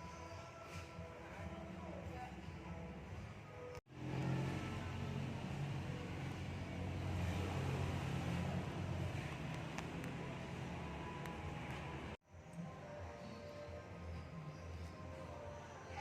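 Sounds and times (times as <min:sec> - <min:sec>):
vehicle engine rumbling: 0:03.9 - 0:12.2.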